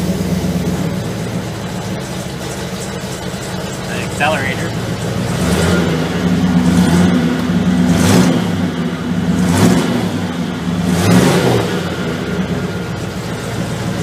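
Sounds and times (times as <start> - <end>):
pickup engine revving: 0.0 - 14.0.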